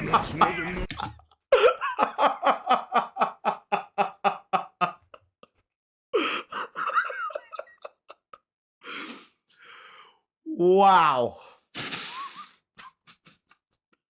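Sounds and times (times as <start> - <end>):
person laughing hard: 0.0 - 5.5, 6.2 - 8.4.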